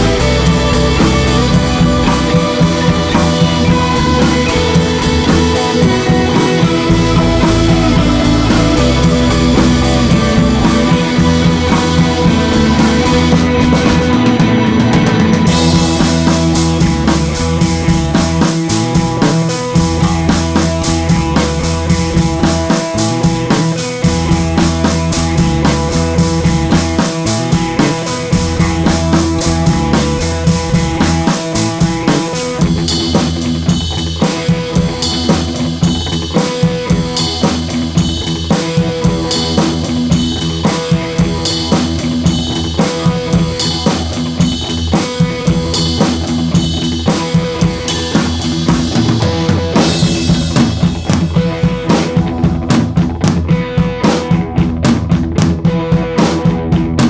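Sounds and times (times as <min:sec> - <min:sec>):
background music: 0:00.0 - 0:32.2
drum kit beat: 0:00.0 - 0:57.0.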